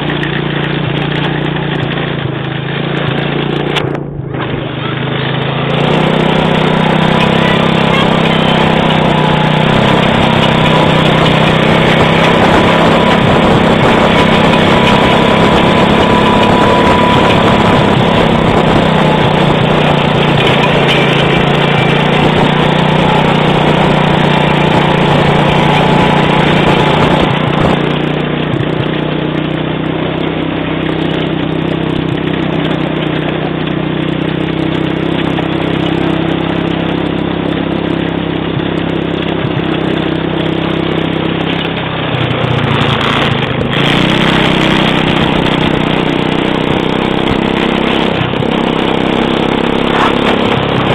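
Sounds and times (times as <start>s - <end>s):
quad bike engine running: 0.0s - 50.9s.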